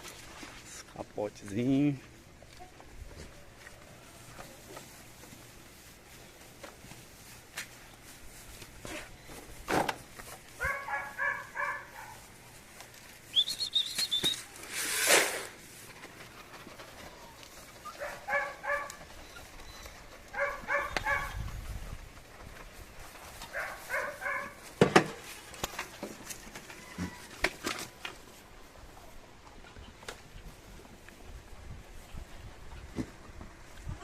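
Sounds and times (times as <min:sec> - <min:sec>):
high chirp: 0:13.3 - 0:14.4.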